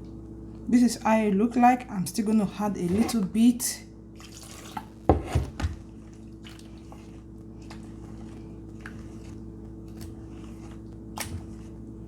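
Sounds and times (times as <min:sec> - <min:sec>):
steady low hum: 0:00.0 - 0:12.0
dough squishing: 0:04.2 - 0:12.0.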